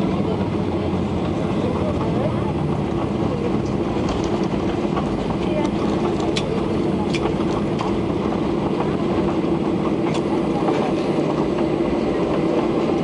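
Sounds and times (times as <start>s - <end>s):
airliner engine hum: 0.0s - 13.0s
low rumble of wheels: 0.0s - 13.0s.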